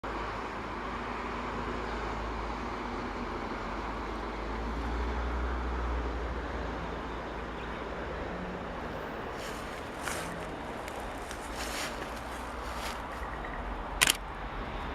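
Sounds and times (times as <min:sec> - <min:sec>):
passenger train rumbling: 0:00.1 - 0:14.9
sharp clicks: 0:14.0 - 0:14.3.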